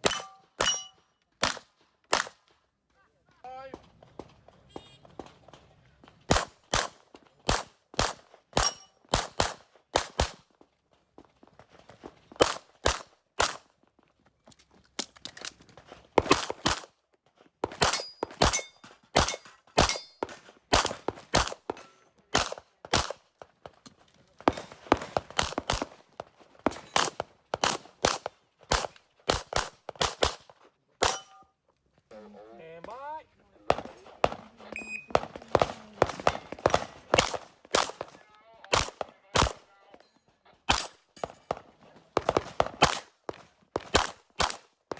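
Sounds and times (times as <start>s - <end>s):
handgun shots: 35.1s - 39.6s.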